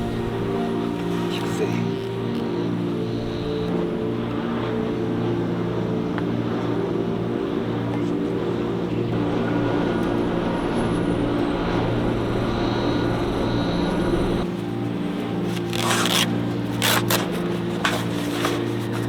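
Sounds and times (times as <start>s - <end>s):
car engine droning: 8.0s - 19.0s.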